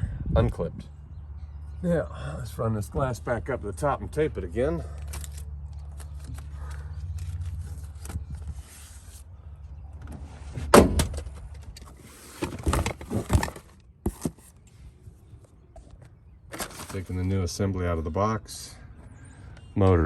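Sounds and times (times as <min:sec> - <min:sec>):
knocks and clunks: 0:10.0 - 0:14.4
rustling: 0:16.5 - 0:17.2.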